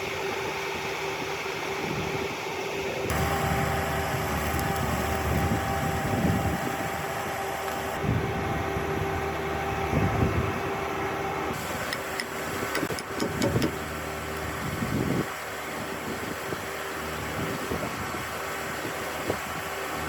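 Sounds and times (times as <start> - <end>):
machine humming: 2.2 - 20.0
sharp clicks: 11.8 - 13.8.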